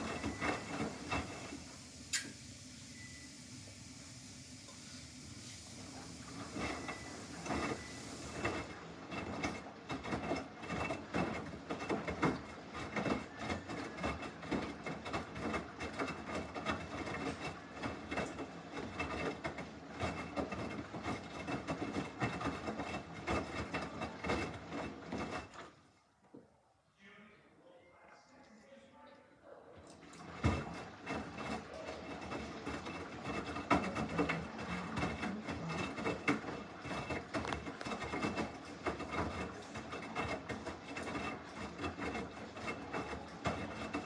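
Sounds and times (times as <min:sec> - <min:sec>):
washing machine drum clattering: 0:30.0 - 0:44.0.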